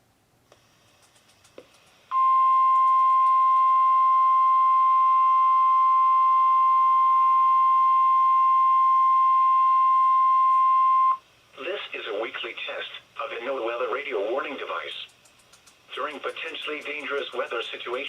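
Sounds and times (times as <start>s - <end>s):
high-pitched alarm tone: 2.1s - 11.2s.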